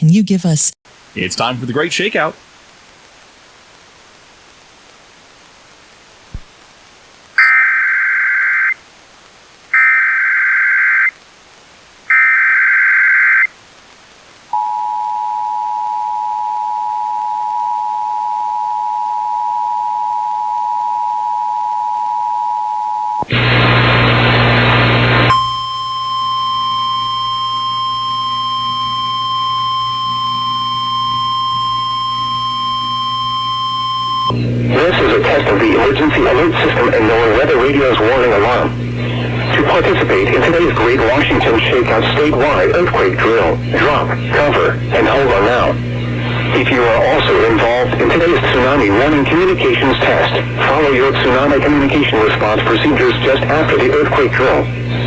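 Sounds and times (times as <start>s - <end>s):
two-tone attention signal: 7.4s - 8.8s, 25.3s - 34.3s
steady warning alarm tone: 9.8s - 11.1s, 12.1s - 13.5s, 14.6s - 23.2s, 25.3s - 34.3s.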